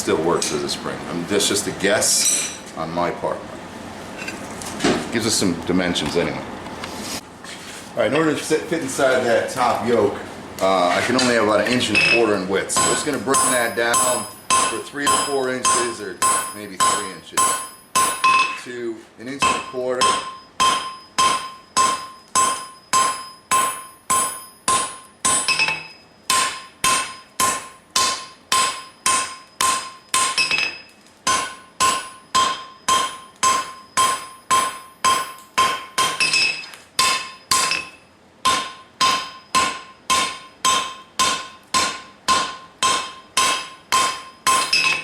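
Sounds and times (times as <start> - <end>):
hammer ringing on anvil: 11.2 - 18.6, 19.4 - 45.0.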